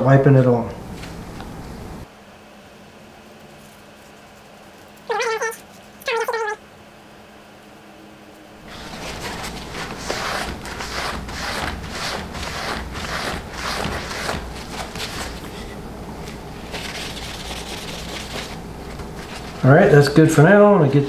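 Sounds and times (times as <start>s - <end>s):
steady low hum: 0.0s - 21.0s
rubbing strokes on metal: 8.6s - 15.6s.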